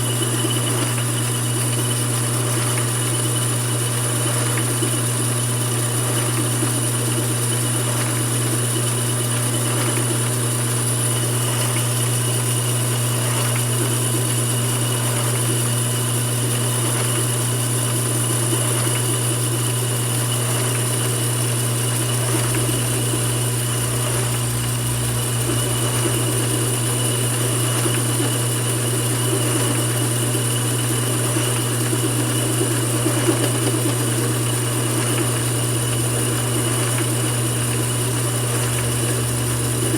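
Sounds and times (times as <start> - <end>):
lathe motor humming: 19.0 - 39.9
high-pitched whine: 22.0 - 29.9.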